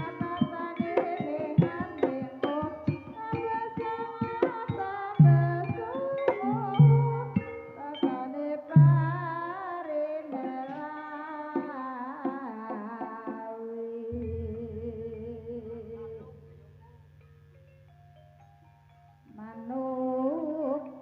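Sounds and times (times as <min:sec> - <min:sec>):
gamelan music: 0:00.0 - 0:09.6, 0:14.1 - 0:21.0
low steady hum: 0:14.1 - 0:21.0.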